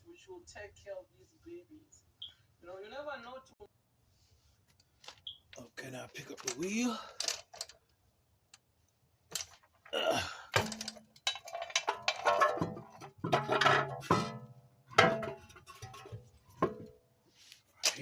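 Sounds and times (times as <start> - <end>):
metallic clanks of car wheel: 10.6 - 17.0.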